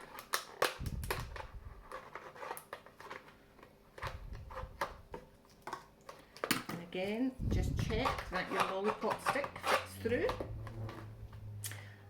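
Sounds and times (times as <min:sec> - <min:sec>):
scissors snipping plastic: 0:00.0 - 0:03.3, 0:07.9 - 0:10.8.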